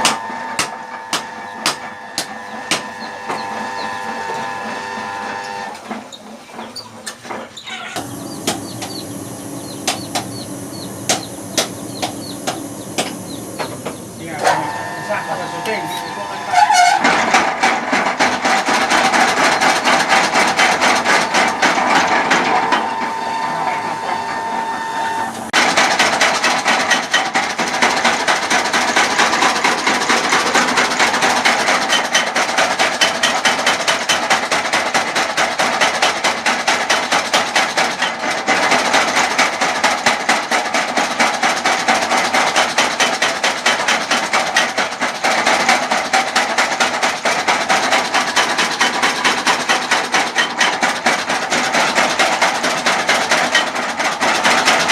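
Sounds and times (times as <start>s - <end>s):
forging hammer pounding metal: 0.0s - 4.5s, 8.2s - 24.8s, 25.5s - 54.9s
steady whine: 0.0s - 5.8s, 8.0s - 16.9s, 19.2s - 25.6s.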